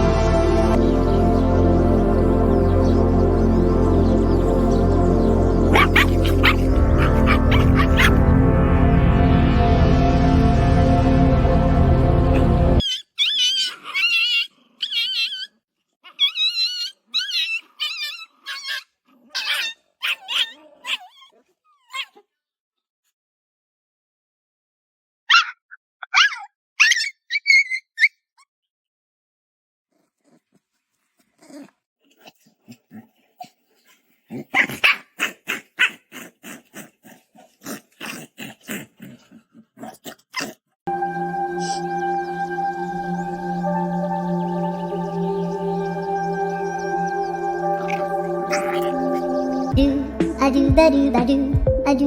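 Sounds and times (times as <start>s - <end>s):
puppy barking: 5.7s - 8.2s, 16.1s - 22.2s, 25.3s - 28.2s, 34.3s - 36.9s, 47.9s - 49.3s
puppy whining: 12.8s - 22.2s, 47.8s - 49.4s.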